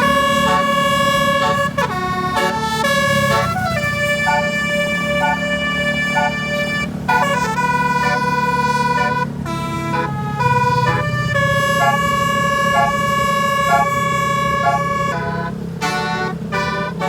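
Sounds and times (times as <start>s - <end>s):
multi-tone air horn tune: 0.0s - 17.0s.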